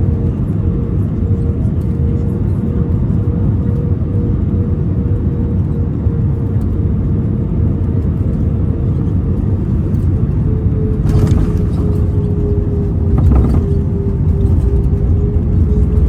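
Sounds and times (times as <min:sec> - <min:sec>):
airplane cabin engine rumble: 0:00.0 - 0:16.0
steady cabin hum: 0:07.4 - 0:16.0.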